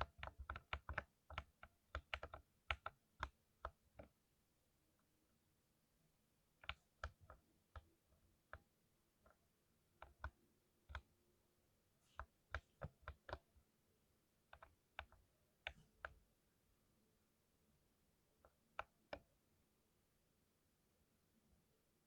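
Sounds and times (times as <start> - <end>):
mechanical keyboard typing: 0.0 - 4.1, 12.6 - 13.4.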